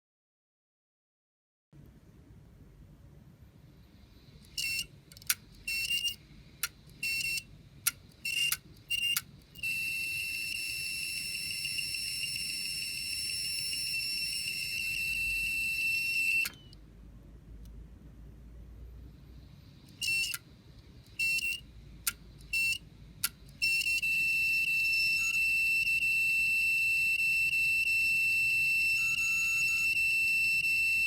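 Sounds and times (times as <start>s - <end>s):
hard disk squealing beeps: 4.5s - 4.9s, 5.6s - 6.2s, 7.0s - 7.5s, 8.2s - 16.8s, 20.0s - 20.4s, 21.1s - 21.7s, 22.5s - 22.9s, 23.6s - 31.0s
high-pitched whine: 9.6s - 16.8s.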